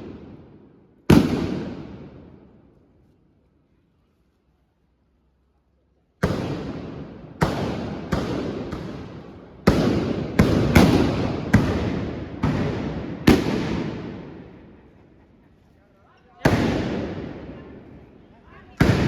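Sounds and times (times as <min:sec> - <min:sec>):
blunderbuss shots echoing: 0:00.0 - 0:02.6, 0:06.2 - 0:14.9, 0:16.4 - 0:18.1.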